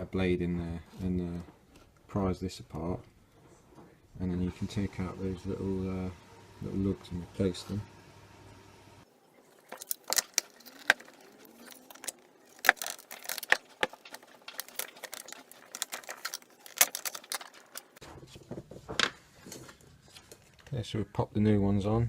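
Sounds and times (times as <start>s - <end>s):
small clicks and scrapes of metal: 9.6s - 18.0s.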